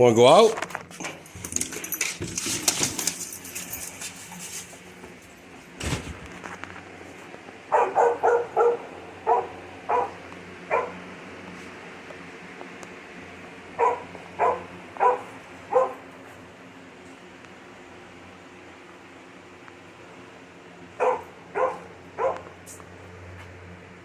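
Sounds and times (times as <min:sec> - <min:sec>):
clattering and rustling: 0:00.5 - 0:06.9
dog barking: 0:07.7 - 0:11.0, 0:13.8 - 0:16.0, 0:21.0 - 0:22.5.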